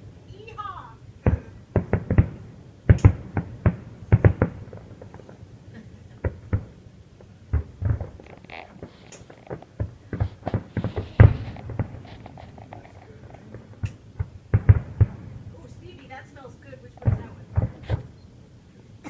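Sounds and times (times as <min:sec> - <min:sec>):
fireworks bangs and pops: 0:01.2 - 0:18.3.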